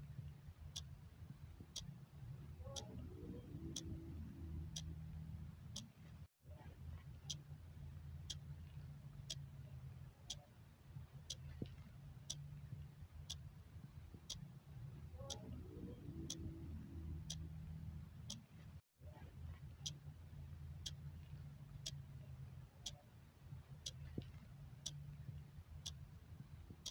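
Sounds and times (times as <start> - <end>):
low steady hum: 0.0 - 26.9
clock ticking: 2.7 - 5.0, 15.3 - 17.5, 23.8 - 25.0.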